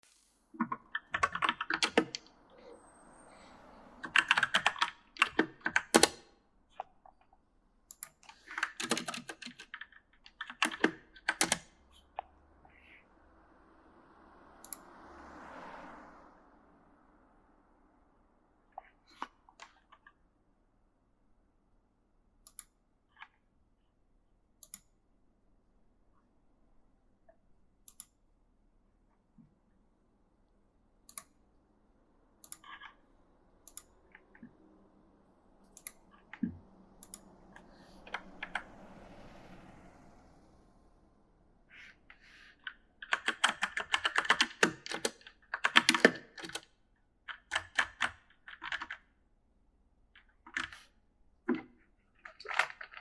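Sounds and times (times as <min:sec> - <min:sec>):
mechanical keyboard typing: 0:00.6 - 0:02.3, 0:04.0 - 0:06.2, 0:07.9 - 0:11.7, 0:42.6 - 0:46.7, 0:47.3 - 0:49.1, 0:51.5 - 0:53.0
mechanical keyboard key clicks: 0:10.5 - 0:11.6.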